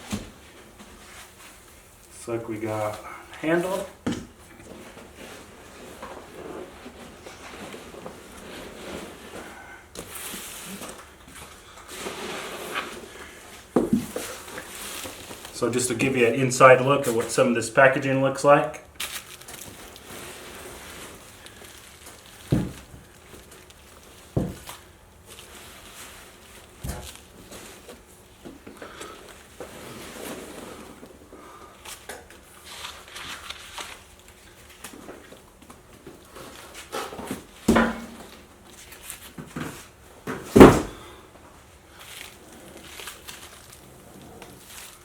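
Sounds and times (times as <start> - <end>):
cardboard and foam packaging handled: 0.0 - 17.4, 18.9 - 45.0
packaging rustling: 19.0 - 28.0, 32.0 - 35.6, 41.9 - 45.0
dull thumps: 37.7 - 38.4, 40.3 - 41.1.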